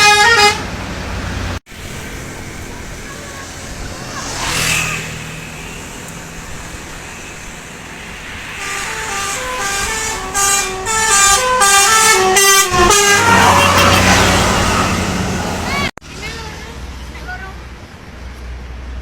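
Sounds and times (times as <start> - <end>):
bus air horn jingle: 0.0 - 0.7, 8.6 - 15.0
road noise: 0.0 - 19.0.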